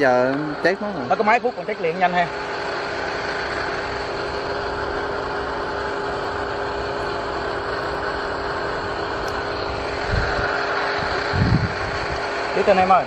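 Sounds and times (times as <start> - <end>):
motor humming steadily: 0.0 - 13.0.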